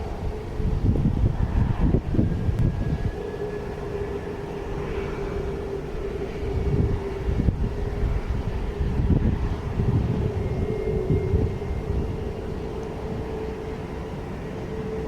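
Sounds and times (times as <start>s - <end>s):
jet engines whining: 0.0s - 15.0s
wind on microphone: 0.0s - 15.0s.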